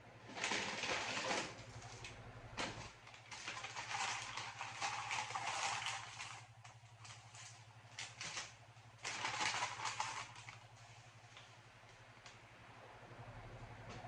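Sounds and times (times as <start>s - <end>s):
steady low hum: 0.0s - 14.0s
wrapper paper crinkling: 0.3s - 10.7s.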